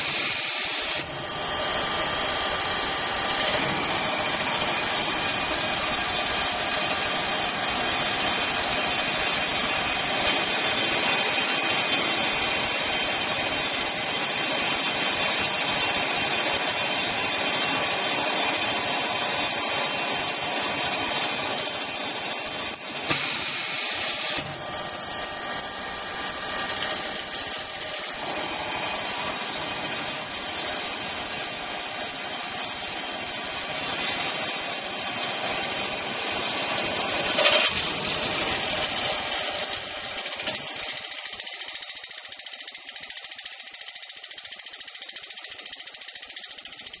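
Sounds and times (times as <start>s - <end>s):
cnc machine running: 0.0s - 37.2s
burst of hiss: 0.0s - 41.8s.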